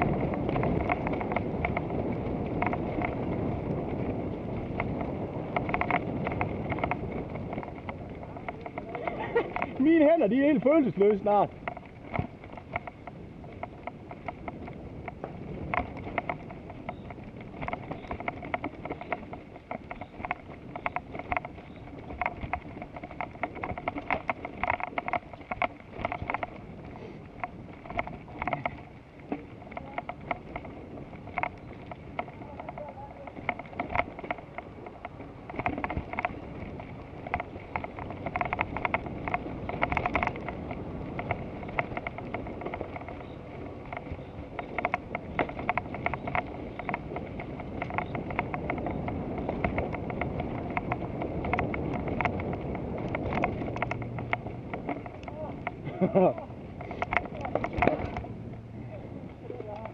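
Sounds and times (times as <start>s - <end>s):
bicycle clicks and rattles: 0.0s - 59.9s
bicycle tyre rumble: 0.0s - 59.9s
wind rush: 0.0s - 59.9s.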